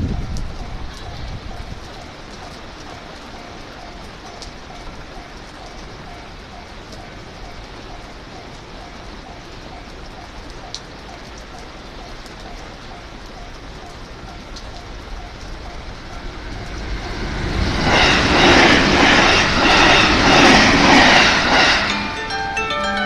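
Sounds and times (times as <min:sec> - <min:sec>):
train passing at speed: 0:00.0 - 0:23.0
level crossing bell ringing: 0:21.8 - 0:23.0.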